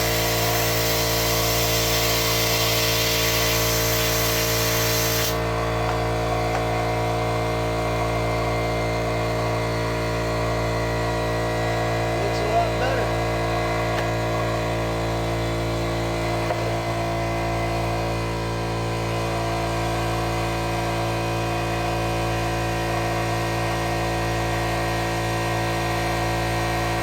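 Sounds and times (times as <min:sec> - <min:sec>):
air pumping into tire: 0:00.0 - 0:06.8
air compressor running: 0:00.0 - 0:27.0.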